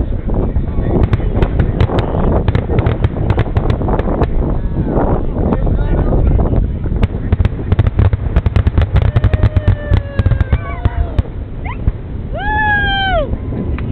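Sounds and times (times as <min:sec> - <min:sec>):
low rumble: 0:00.0 - 0:13.9
fireworks cracking and popping: 0:00.9 - 0:04.6, 0:07.0 - 0:12.0.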